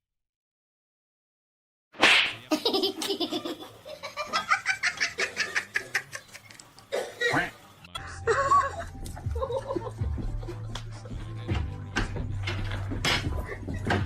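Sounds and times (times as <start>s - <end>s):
person laughing hard: 8.0s - 11.1s.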